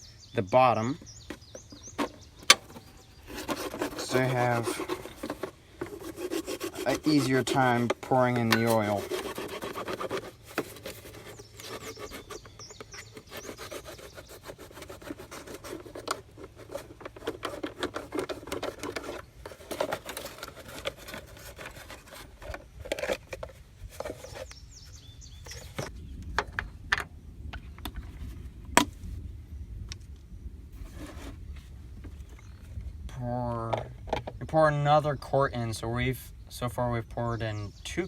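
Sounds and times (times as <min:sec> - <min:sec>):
knife sawing through plastic: 0:02.7 - 0:23.2.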